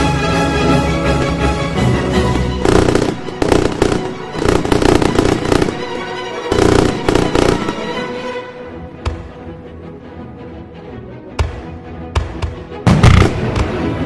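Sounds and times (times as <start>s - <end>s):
music playing: 0.0s - 14.0s
fireworks crackling volleys: 2.3s - 8.2s, 12.9s - 14.0s.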